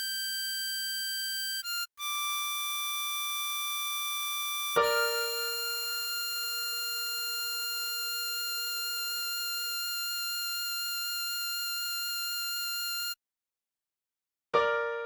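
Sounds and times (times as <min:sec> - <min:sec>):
harmonica note held: 0:04.8 - 0:08.2.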